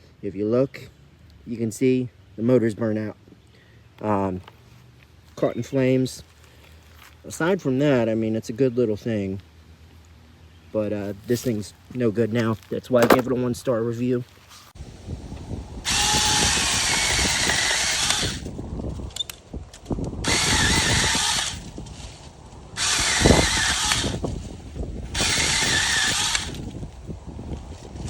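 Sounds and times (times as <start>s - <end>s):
electric chainsaw running: 15.8s - 18.5s, 20.2s - 21.8s, 22.7s - 24.4s, 25.1s - 26.8s.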